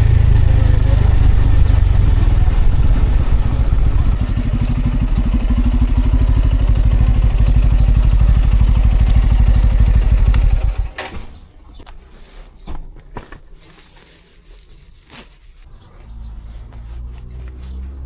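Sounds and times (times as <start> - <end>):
motorcycle engine running: 0.0 - 11.4.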